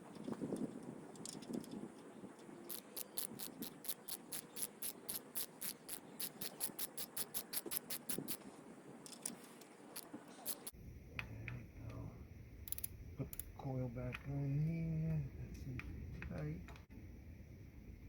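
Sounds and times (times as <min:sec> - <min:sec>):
socket ratchet clicking: 0:02.7 - 0:08.4, 0:10.0 - 0:10.7, 0:12.7 - 0:13.5.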